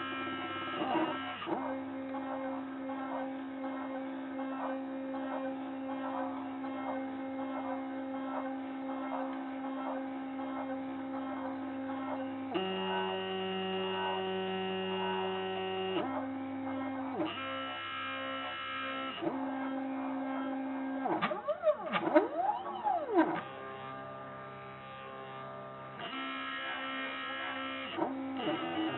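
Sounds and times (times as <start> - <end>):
stepper motors whining: 21.0 - 24.0, 26.0 - 28.9.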